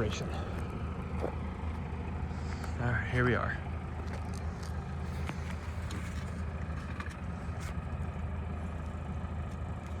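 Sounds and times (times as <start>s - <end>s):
diesel engine humming: 0.0s - 10.0s.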